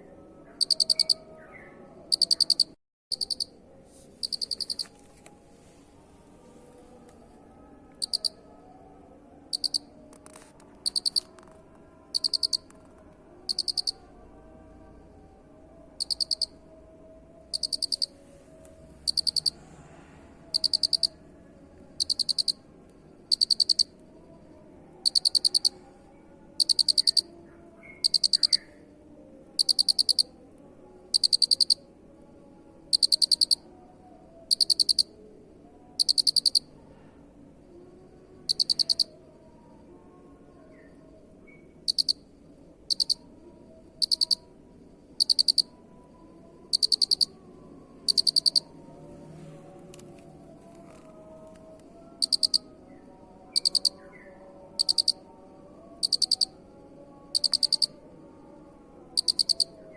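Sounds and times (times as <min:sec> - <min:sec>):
cricket chirping: 0:00.5 - 0:01.3, 0:02.1 - 0:03.6, 0:04.2 - 0:04.9, 0:08.0 - 0:08.8, 0:09.5 - 0:11.5, 0:12.1 - 0:12.7, 0:13.4 - 0:18.2, 0:18.8 - 0:59.9.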